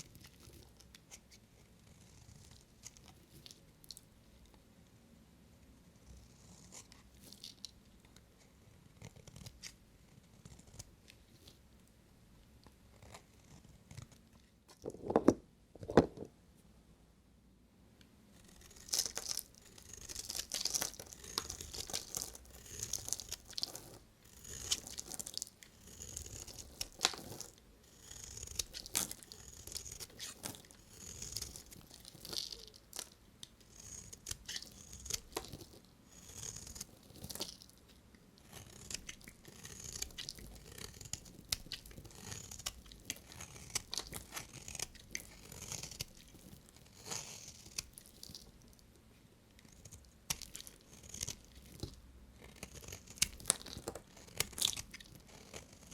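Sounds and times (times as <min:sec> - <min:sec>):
knife cutting soap: 0:18.4 - 0:48.8, 0:49.5 - 0:55.9.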